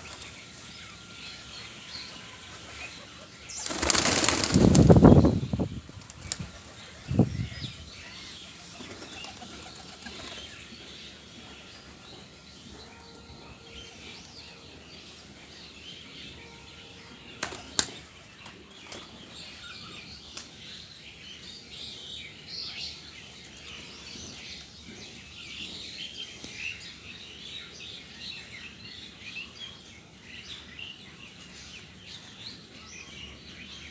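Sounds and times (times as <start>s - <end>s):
small birds chirping: 0.0s - 33.9s
pigeon wings flapping: 3.6s - 5.2s.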